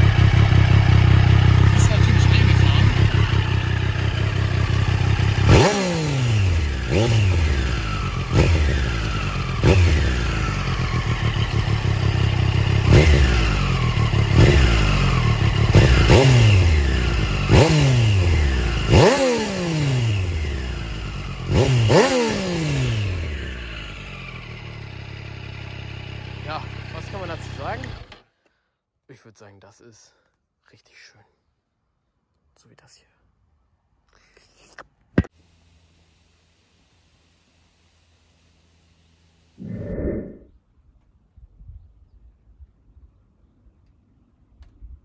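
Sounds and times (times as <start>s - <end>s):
motorcycle engine revving: 0.0s - 28.2s, 37.3s - 40.6s.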